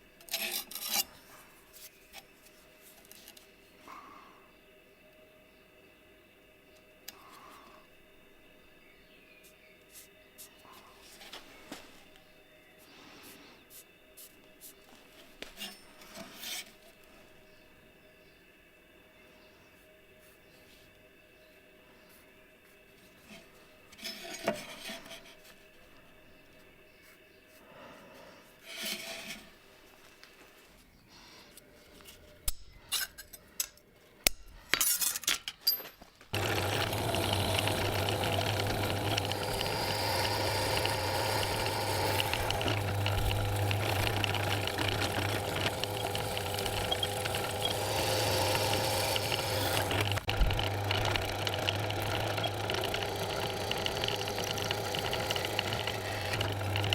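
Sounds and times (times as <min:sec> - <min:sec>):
metal tools clinking: 0:34.7 - 0:36.1
shop machine humming: 0:36.3 - 0:56.9.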